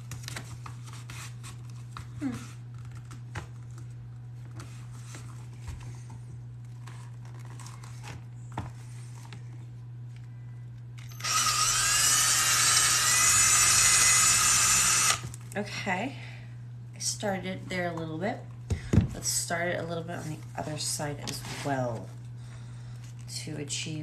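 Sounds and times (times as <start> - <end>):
electric drill drilling leather: 11.0 - 15.3.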